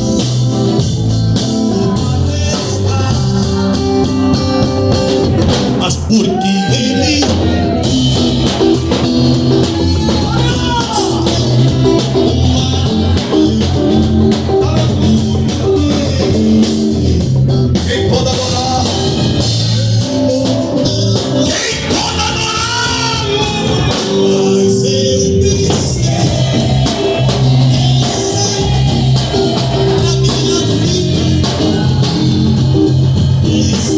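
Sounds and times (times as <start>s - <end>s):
band playing gospel song: 0.0s - 33.9s.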